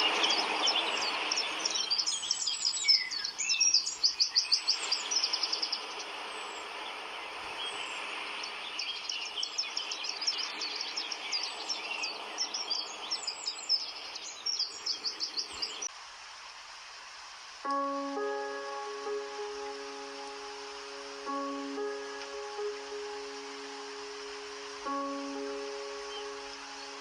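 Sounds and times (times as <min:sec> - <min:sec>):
birds singing with trills: 0:00.0 - 0:15.9, 0:17.7 - 0:27.0
steady background hiss: 0:00.0 - 0:27.0.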